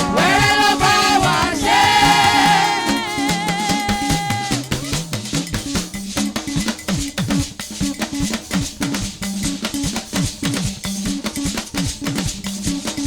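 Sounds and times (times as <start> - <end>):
sliding bass line: 0.0 - 3.1
drums and percussion: 0.0 - 13.0.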